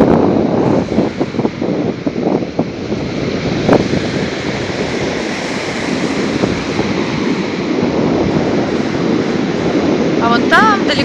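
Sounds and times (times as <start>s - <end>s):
surf breaking on shore: 0.0s - 11.0s
wind blowing over microphone: 0.0s - 11.0s.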